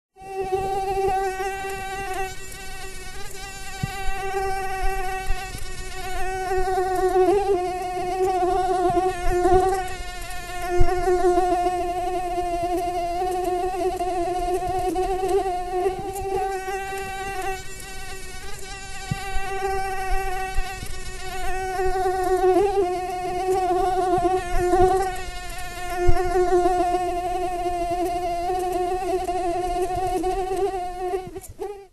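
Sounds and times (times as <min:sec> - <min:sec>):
mosquito whining: 0:00.2 - 0:31.9.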